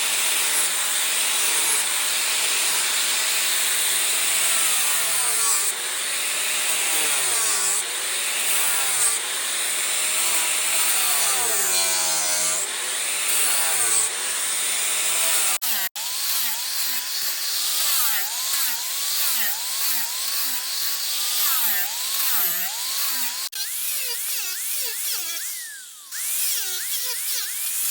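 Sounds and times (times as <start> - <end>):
rotary carving tool cutting wood: 0.0 - 27.9.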